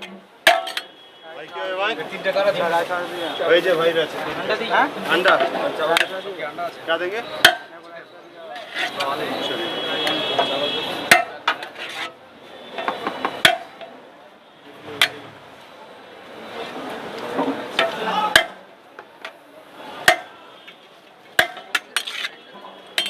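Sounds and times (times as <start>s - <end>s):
metal utensils clanking on cookware: 0.0s - 0.9s, 21.4s - 23.0s
background murmur: 0.0s - 23.0s.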